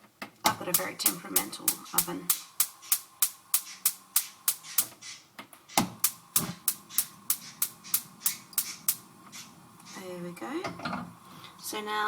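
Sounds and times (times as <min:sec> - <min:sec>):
gas igniter clicking: 0:00.4 - 0:10.8.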